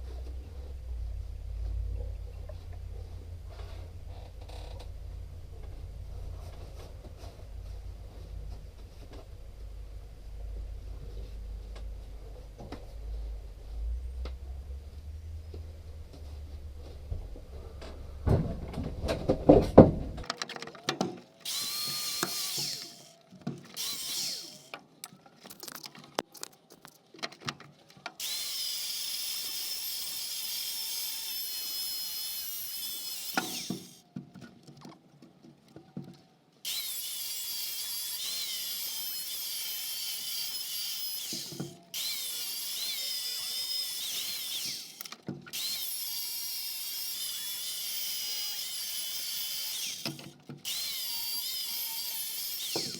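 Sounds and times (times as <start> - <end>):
metal knocking and clattering: 17.8 - 21.2
power tool high-pitched whine: 21.4 - 23.2, 23.8 - 24.7, 28.2 - 34.0, 36.7 - 52.9.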